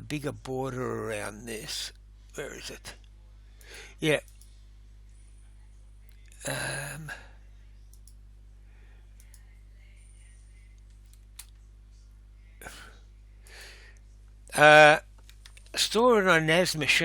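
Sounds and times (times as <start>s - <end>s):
low electrical hum: 0.0s - 17.0s
breathy vocal sound: 6.4s - 7.4s
computer mouse clicks: 7.9s - 8.2s, 9.2s - 9.5s.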